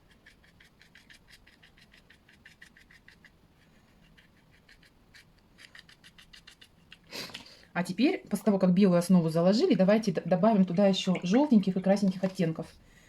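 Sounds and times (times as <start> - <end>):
paintbrush scratching on paper: 0.0 - 7.1.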